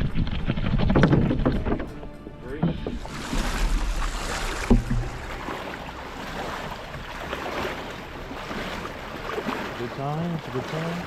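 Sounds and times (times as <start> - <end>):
wind: 0.0 - 11.0
knock on boat: 0.8 - 5.7
river water rushing: 2.3 - 11.0.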